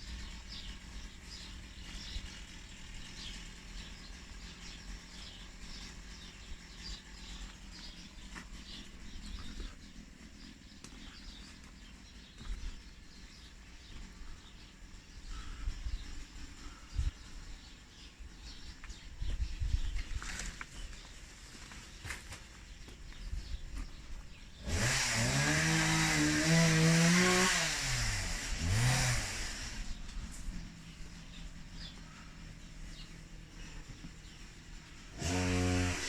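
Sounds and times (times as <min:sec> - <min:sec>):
low outdoor rumble: 0:00.0 - 0:24.7, 0:28.4 - 0:35.3
small birds chirping: 0:00.0 - 0:27.5, 0:28.5 - 0:36.0
soft low thumps: 0:06.5 - 0:17.6, 0:22.8 - 0:24.6, 0:29.8 - 0:35.1.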